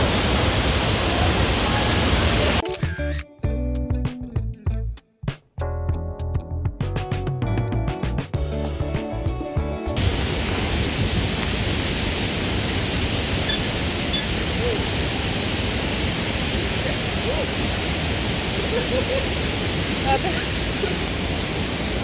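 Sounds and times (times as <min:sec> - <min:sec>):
waterfall rushing: 0:00.0 - 0:02.6, 0:10.0 - 0:22.0
music track: 0:02.6 - 0:04.2, 0:06.2 - 0:10.5.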